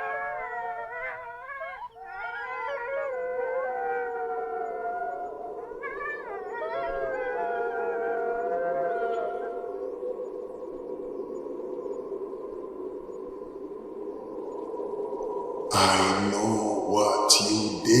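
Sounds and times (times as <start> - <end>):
dogs howling: 0.0 - 11.0.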